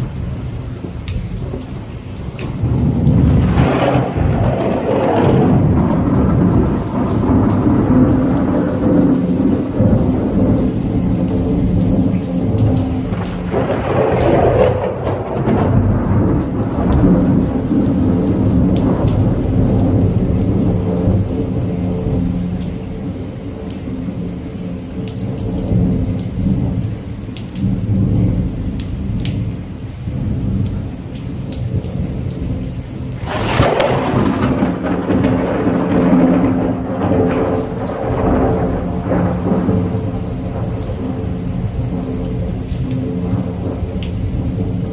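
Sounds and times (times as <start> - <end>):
steady rain: 0.0 - 44.9
rolling thunder: 2.4 - 23.2, 33.1 - 44.9.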